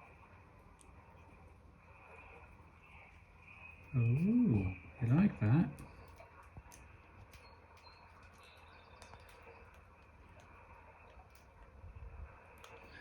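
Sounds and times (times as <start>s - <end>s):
low room hum: 0.0s - 13.0s
faint ticks: 5.7s - 13.0s.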